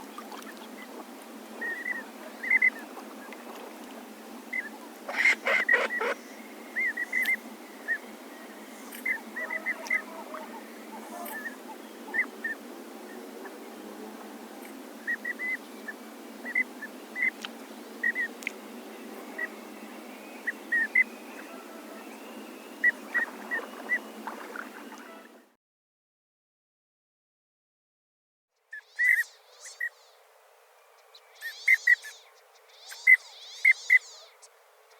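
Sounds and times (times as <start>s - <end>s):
harsh waterfowl calls: 4.5s - 7.4s, 9.0s - 12.3s, 22.8s - 25.4s
short high bird calls: 5.1s - 8.0s.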